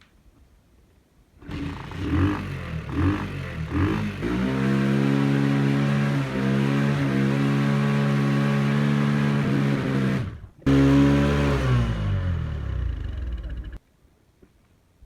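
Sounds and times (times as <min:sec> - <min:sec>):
motorcycle engine revving: 0:01.4 - 0:13.8.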